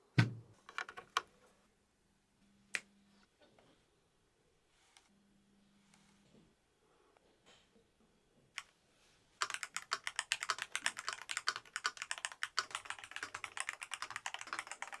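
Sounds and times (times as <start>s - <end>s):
keyboard key presses: 9.4s - 15.0s.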